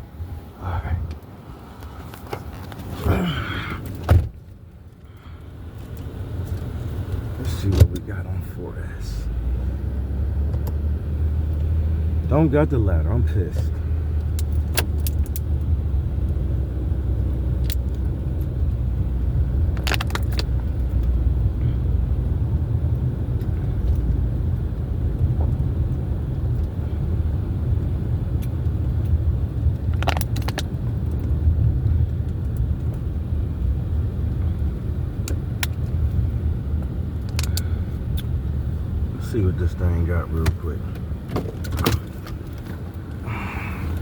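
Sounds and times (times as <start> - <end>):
car engine idling: 0.0 - 44.0.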